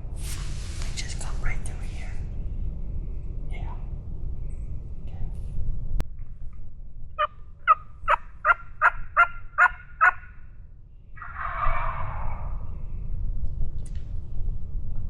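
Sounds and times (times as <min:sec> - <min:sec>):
turkey gobble: 0:07.2 - 0:10.4, 0:11.2 - 0:12.5
wild turkey yelps: 0:07.2 - 0:10.4, 0:11.2 - 0:12.6.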